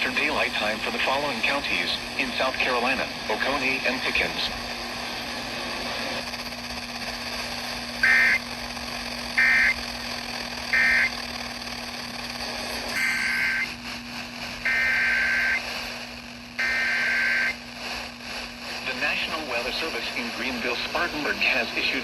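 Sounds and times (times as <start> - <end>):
radio hiss and hum: 0.0 - 22.0
warbling two-tone data squawk: 8.0 - 8.4, 13.0 - 13.7.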